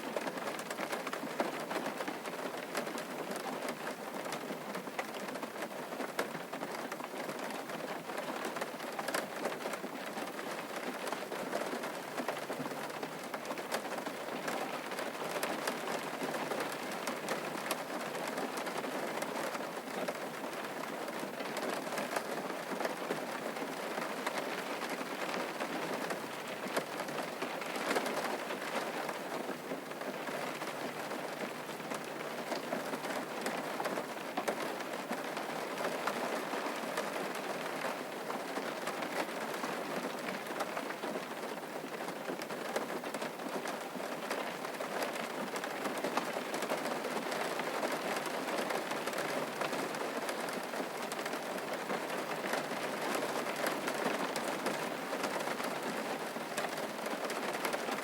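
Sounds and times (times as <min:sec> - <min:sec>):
steady rain pattering: 0:00.0 - 0:58.0.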